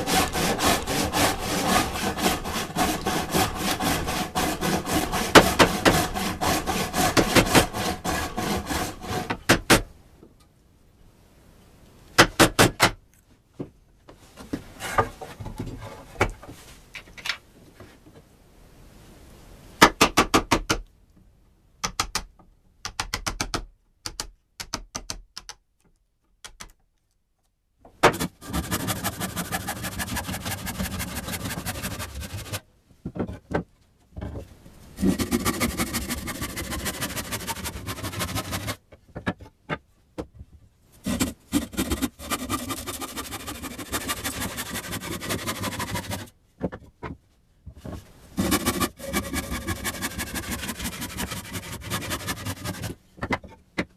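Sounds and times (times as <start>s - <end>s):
saw cutting through wood: 0.0s - 9.4s, 28.1s - 32.6s, 35.0s - 38.8s, 41.0s - 46.3s, 48.4s - 53.0s.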